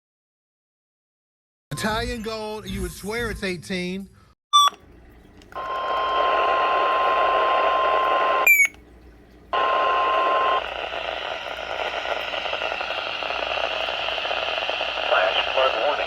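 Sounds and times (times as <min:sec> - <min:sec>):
radio static hiss: 0:05.6 - 0:08.4, 0:09.5 - 0:16.0
single-pitch warning alarm tone: 0:06.9 - 0:08.8
short radio chirp: 0:09.6 - 0:16.0.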